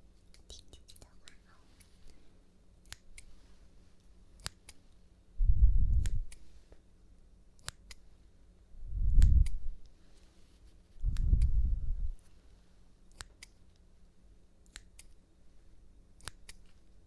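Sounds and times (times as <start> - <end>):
scissors snipping: 2.8 - 3.3, 4.0 - 4.9, 6.0 - 6.5, 7.6 - 8.0, 9.2 - 9.6, 13.1 - 13.8, 14.6 - 15.2, 16.2 - 16.8
low muffled rumbles: 5.4 - 6.3, 11.0 - 12.2.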